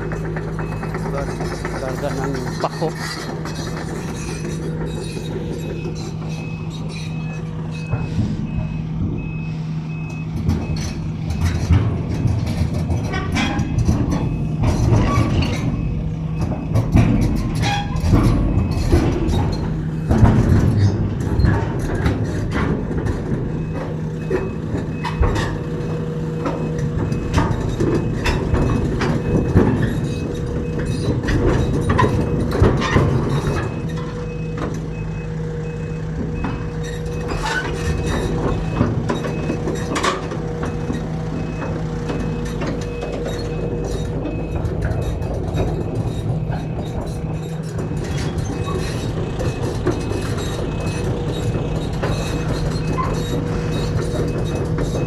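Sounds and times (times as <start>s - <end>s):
backhoe diesel engine running: 0.0s - 55.0s
digging knocks and clanks: 0.0s - 55.0s
high reversing alarm beep: 26.6s - 27.4s, 33.3s - 39.6s, 40.7s - 47.3s.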